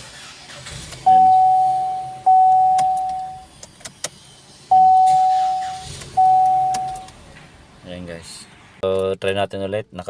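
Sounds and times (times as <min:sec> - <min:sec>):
single-pitched electronic beep: 0:04.7 - 0:07.1.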